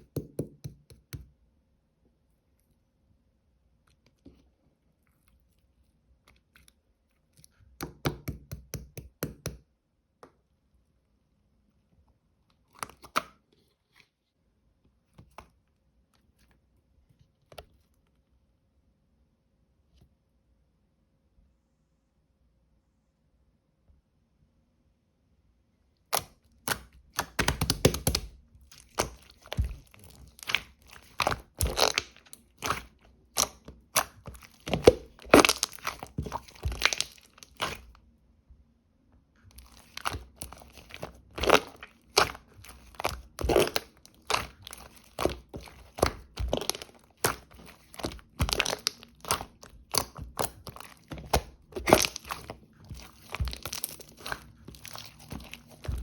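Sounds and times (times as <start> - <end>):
hands squishing slime: 26.1 - 38.0, 39.5 - 56.0.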